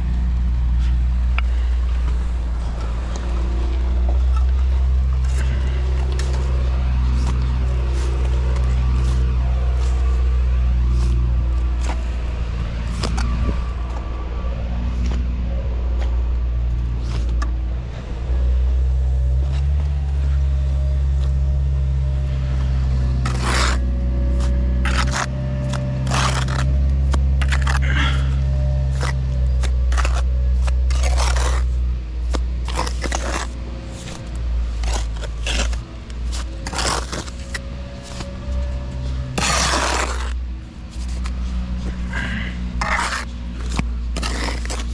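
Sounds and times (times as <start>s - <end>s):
metal scrapes and clanks: 23.1s - 31.7s, 32.3s - 44.9s.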